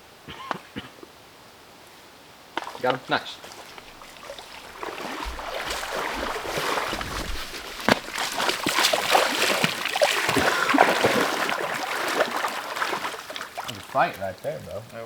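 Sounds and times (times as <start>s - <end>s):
stream water rushing: 2.4s - 14.4s
fish thrashing splashes: 2.6s - 14.0s.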